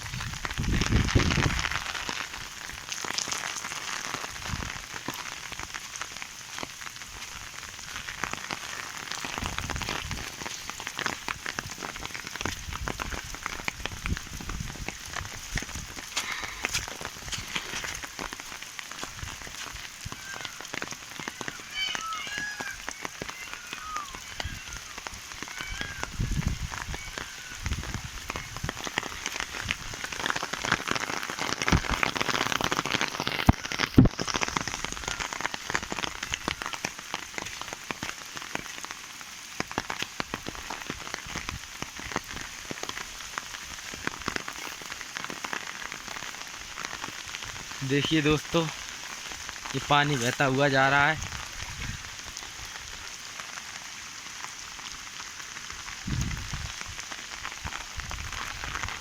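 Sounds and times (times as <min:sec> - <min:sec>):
heavy rain pouring: 0:00.0 - 0:59.0.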